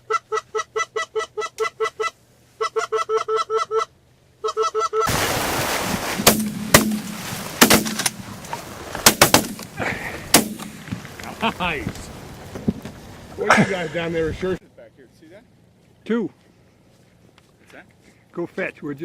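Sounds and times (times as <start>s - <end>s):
shotgun shots: 6.2s - 8.2s, 9.0s - 9.7s, 10.3s - 10.9s.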